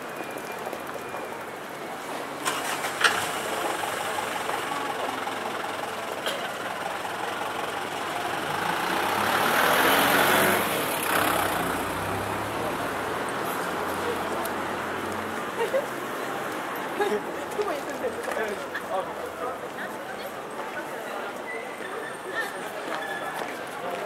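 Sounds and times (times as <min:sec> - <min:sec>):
street traffic engines: 0:00.0 - 0:24.0
vehicle passing close by: 0:07.3 - 0:16.4.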